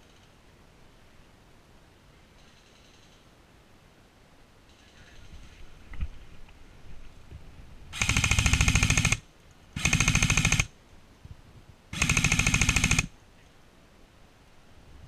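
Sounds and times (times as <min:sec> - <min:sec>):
airsoft rifle full-auto bursts: 0:08.0 - 0:09.2, 0:09.8 - 0:10.7, 0:12.0 - 0:13.1.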